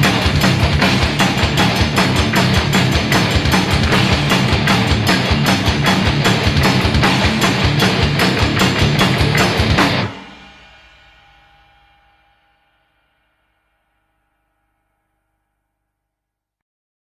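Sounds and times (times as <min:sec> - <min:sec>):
rock music with electric guitar: 0:00.0 - 0:10.7.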